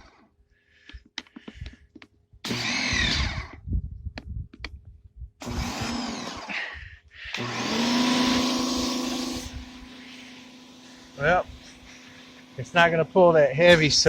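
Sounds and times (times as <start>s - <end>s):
pressure washer spraying: 7.4s - 14.0s.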